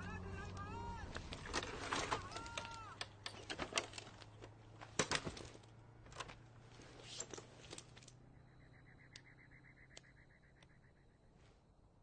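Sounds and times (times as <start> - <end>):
arching whistle-like tone: 8.4 - 11.2.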